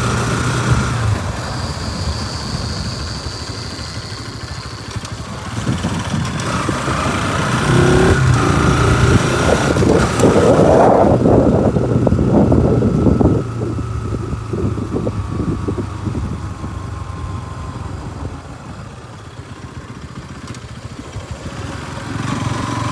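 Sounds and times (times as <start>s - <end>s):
motorcycle engine revving: 0.0s - 22.9s.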